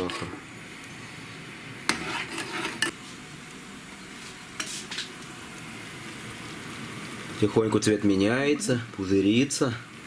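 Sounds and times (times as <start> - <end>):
sugar boiling with bubbling hiss: 0.0 - 10.0
spoon scraping a ladle: 1.9 - 3.0.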